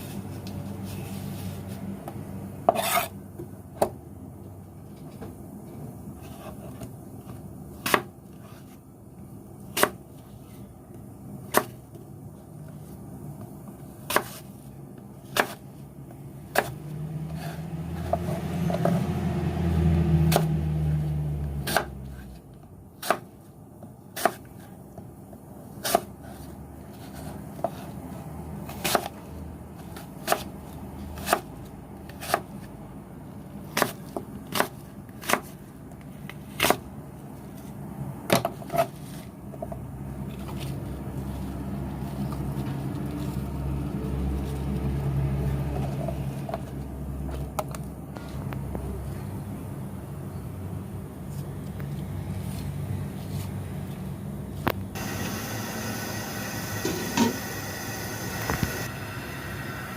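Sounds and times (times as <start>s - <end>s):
knife chopping on cutting board: 2.7s - 3.1s, 7.8s - 8.1s, 9.7s - 10.0s, 14.0s - 14.4s, 15.3s - 15.6s, 23.0s - 23.3s, 25.8s - 26.1s, 28.7s - 29.1s, 33.7s - 35.5s.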